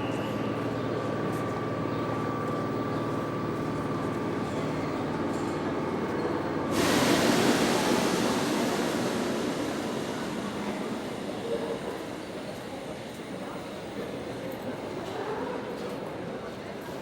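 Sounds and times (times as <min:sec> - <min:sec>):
train rumbling with low hum: 0:00.0 - 0:15.2
loud hiss: 0:06.7 - 0:13.1.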